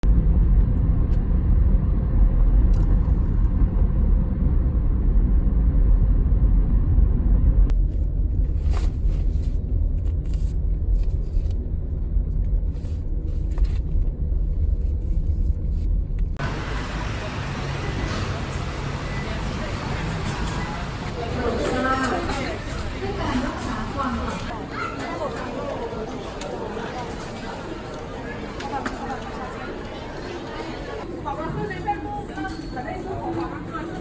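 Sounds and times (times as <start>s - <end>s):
low rumble of moving vehicle: 0.0s - 24.5s.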